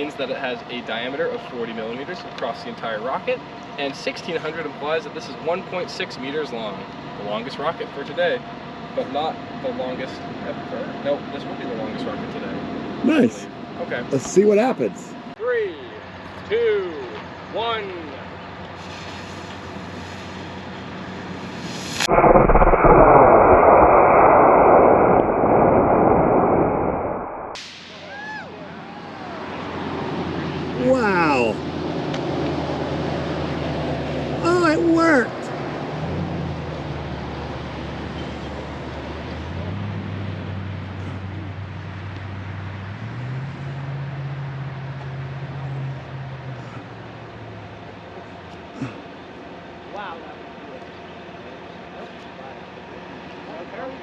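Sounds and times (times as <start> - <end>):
steady hiss: 18.8 - 23.4
rocket motor roaring: 19.1 - 28.2.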